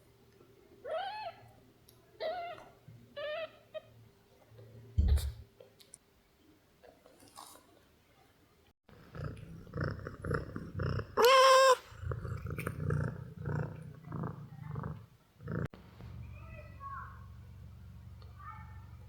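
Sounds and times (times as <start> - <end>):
soft thump: 5.0 - 5.4
squeaky kitten cry: 11.2 - 11.8.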